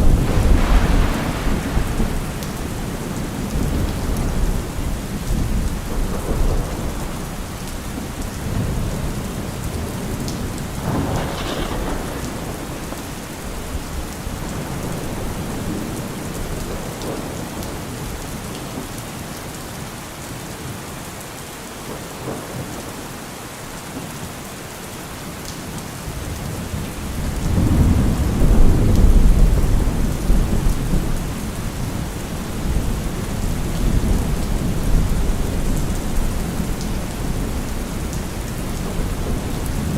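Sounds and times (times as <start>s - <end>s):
rolling thunder: 0.0s - 18.2s, 26.3s - 39.9s
steady rain falling: 0.0s - 39.9s.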